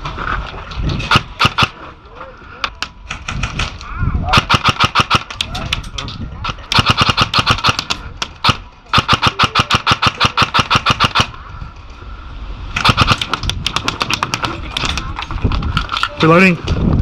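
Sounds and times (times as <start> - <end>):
airsoft rifle firing bursts: 1.1 - 1.8, 4.3 - 5.5, 6.7 - 11.4, 12.8 - 14.5.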